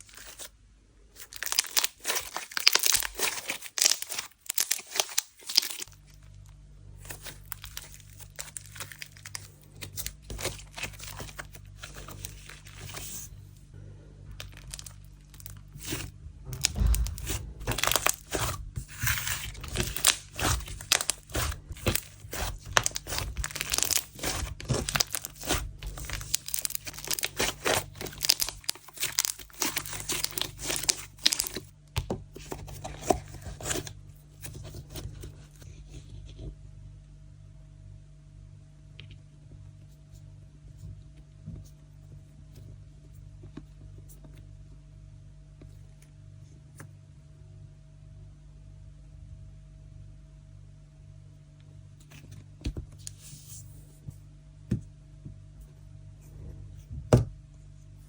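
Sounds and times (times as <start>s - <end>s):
faint low hum: 0.0s - 58.0s
hands squishing sticky slime: 15.6s - 31.7s.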